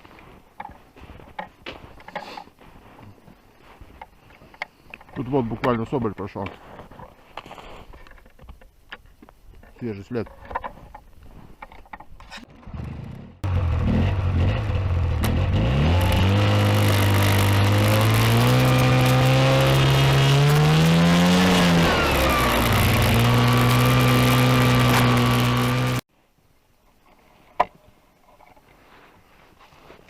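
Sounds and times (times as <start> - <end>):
vehicle engine accelerating: 12.7 - 26.0.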